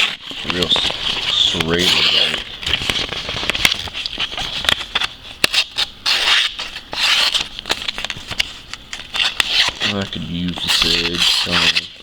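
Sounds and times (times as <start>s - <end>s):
knife sawing through paper: 0.0s - 2.5s, 9.2s - 12.0s
paper rustling: 0.0s - 12.0s.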